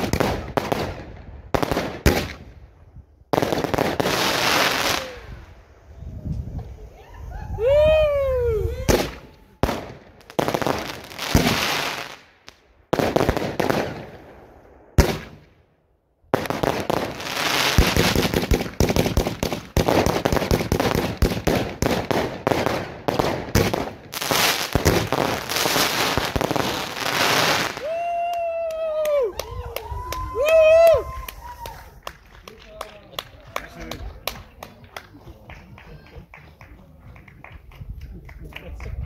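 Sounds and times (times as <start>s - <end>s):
fireworks bangs: 0.0s - 2.7s, 3.3s - 5.7s, 7.7s - 15.6s, 16.3s - 28.1s.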